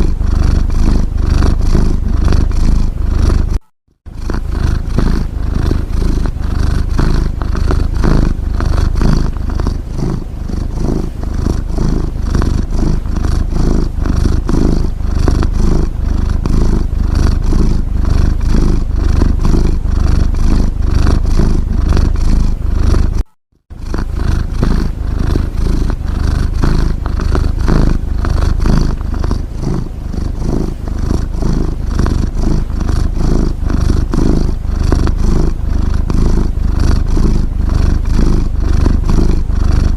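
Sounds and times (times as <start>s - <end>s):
cat purring: 0.0s - 39.9s.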